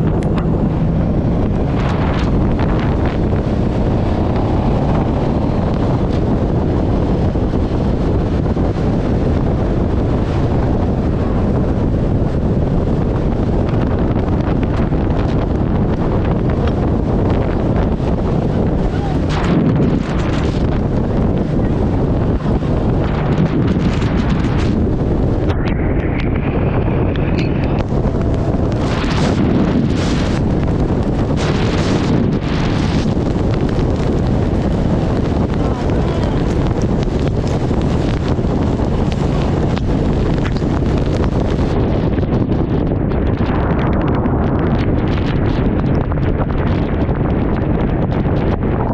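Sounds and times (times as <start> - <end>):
wind buffeting microphone: 0.0 - 48.9.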